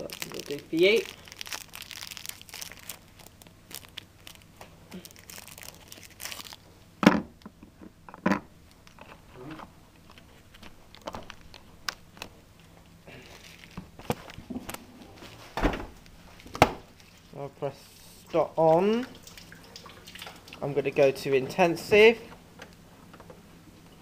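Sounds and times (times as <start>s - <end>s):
rustling handling noises: 8.6s - 17.4s.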